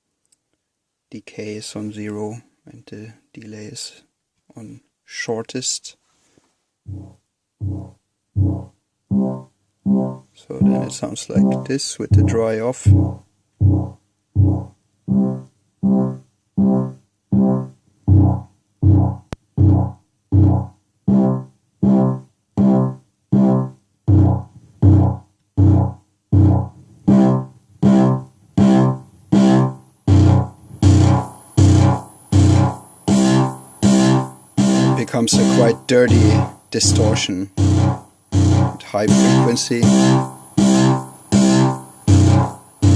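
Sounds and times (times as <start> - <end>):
distorted synthesizer notes: 6.9 - 42.9
thin high whine: 29.3 - 42.9.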